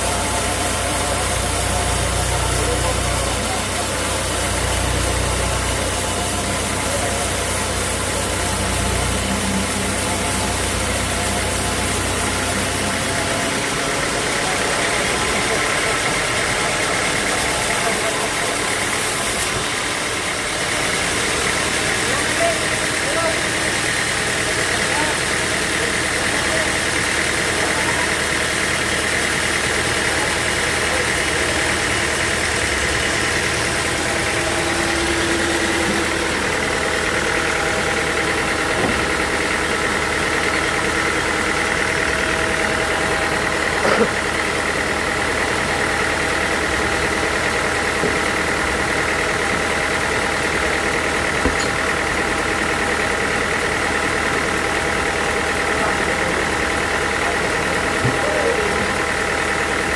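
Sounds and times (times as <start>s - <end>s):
sawmill motor hum: 0.0s - 59.9s
steady high whine: 29.1s - 46.1s.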